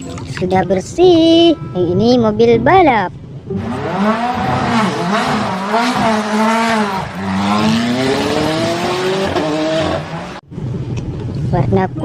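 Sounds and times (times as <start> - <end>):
race car engine revving: 3.5 - 10.5.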